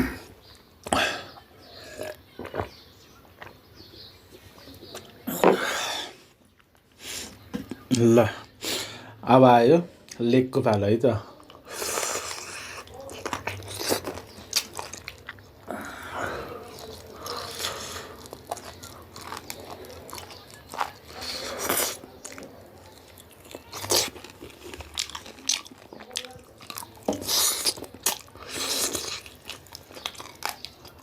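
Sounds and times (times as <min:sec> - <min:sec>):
chewing chicken close-up: 0:01.3 - 0:05.2, 0:11.3 - 0:31.0.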